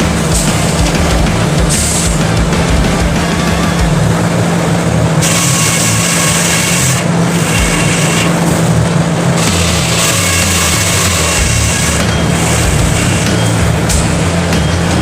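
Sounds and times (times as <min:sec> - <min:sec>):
sawmill engine running: 0:00.0 - 0:15.0
saw cutting log: 0:05.2 - 0:15.0.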